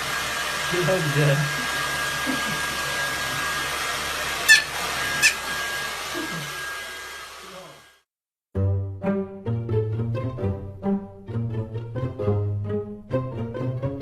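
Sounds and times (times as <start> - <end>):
short high squeaks: 4.5 - 5.4
string music with plucked bass: 8.5 - 14.0.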